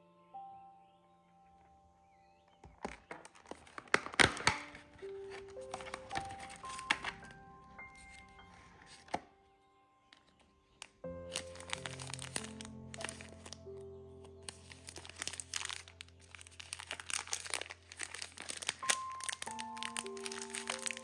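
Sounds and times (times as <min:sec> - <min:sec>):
brittle material crunching: 0:02.5 - 0:07.4, 0:10.1 - 0:21.0
sustained background music: 0:03.7 - 0:21.0.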